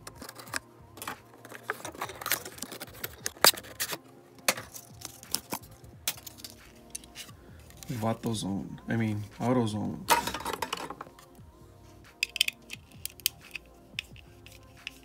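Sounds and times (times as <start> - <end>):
plastic packaging being opened: 0.0 - 8.0.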